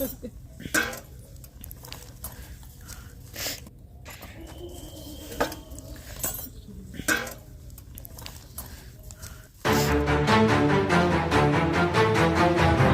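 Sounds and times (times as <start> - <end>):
spoons clinking on metal dishes: 5.2 - 7.5.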